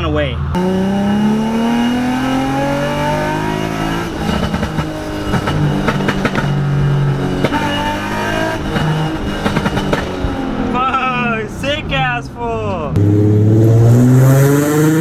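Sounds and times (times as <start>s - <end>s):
car engine revving: 0.0s - 15.0s
exhaust pops and crackles: 1.8s - 13.1s.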